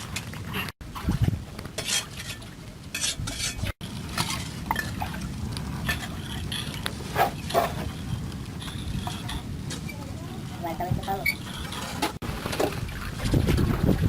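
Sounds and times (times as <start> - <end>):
hand tools scraping dirt and stone: 1.8 - 4.6.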